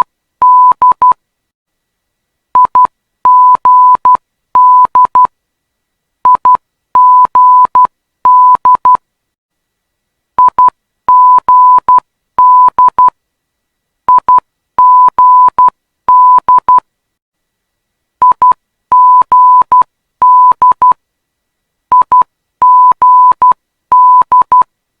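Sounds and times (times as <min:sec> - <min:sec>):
morse code beep tone: 0:02.6 - 0:05.3, 0:06.3 - 0:09.0, 0:10.4 - 0:13.1, 0:14.1 - 0:16.8, 0:18.2 - 0:21.0, 0:21.9 - 0:24.6.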